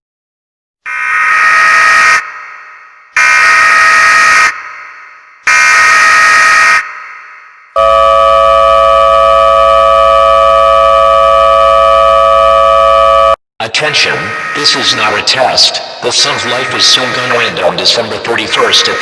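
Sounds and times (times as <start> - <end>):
two-tone attention signal: 7.8 - 13.4.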